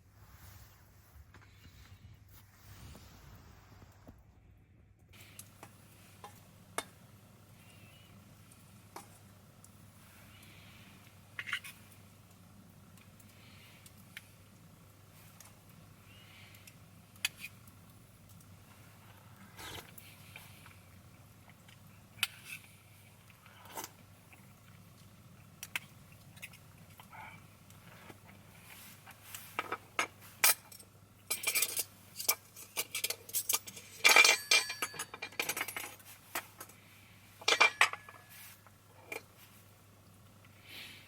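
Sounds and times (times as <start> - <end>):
metal cookware clinking and scraping: 11.4 - 11.8, 29.6 - 36.8, 37.4 - 38.3.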